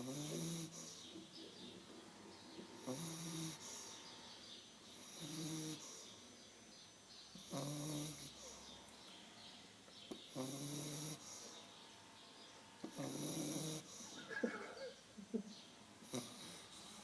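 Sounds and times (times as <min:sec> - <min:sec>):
puppy snoring: 0:00.0 - 0:06.2, 0:07.3 - 0:08.9, 0:10.1 - 0:11.9, 0:12.8 - 0:14.6, 0:16.0 - 0:17.0.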